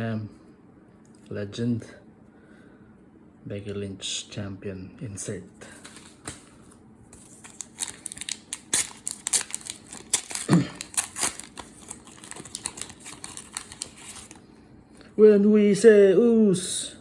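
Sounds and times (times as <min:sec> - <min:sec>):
foil wrapper tearing and crackling: 0:07.2 - 0:14.4.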